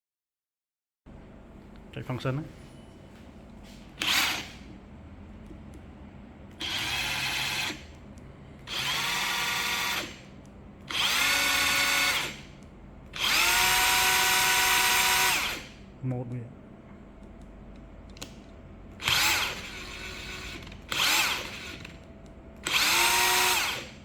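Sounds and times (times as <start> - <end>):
cordless impact wrench whining: 4.0 - 4.7, 6.5 - 8.0, 8.6 - 10.3, 10.9 - 15.8, 19.0 - 22.0, 22.6 - 24.0.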